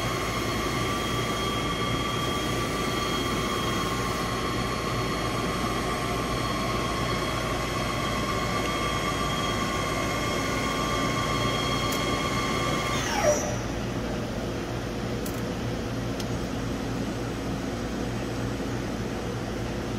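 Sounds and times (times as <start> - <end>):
machine drive whining: 0.0 - 14.4
fan-like hum: 0.0 - 19.9
mechanical hum: 0.0 - 19.9.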